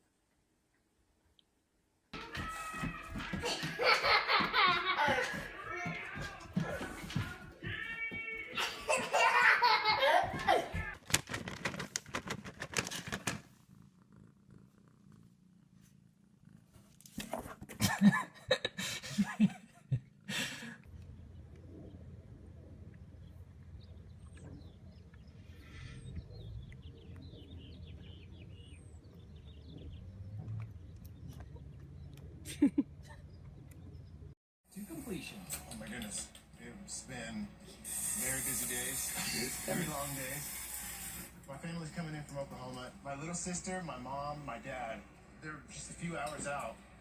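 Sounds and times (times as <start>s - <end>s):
cat purring: 11.5s - 17.8s
mixed bursts of sound: 37.5s - 42.1s.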